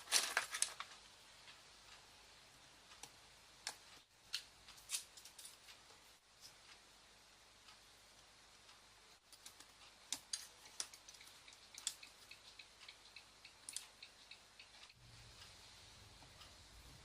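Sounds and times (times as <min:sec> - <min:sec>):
light ticks: 0:07.6 - 0:15.6.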